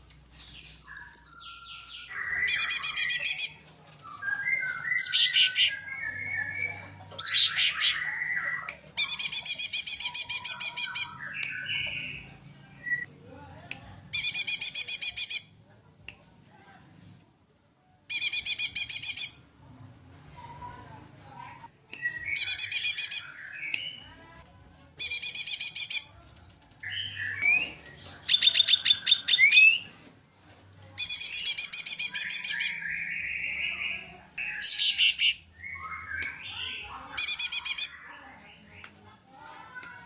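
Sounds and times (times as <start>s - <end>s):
bird chattering: 36.5s - 38.0s.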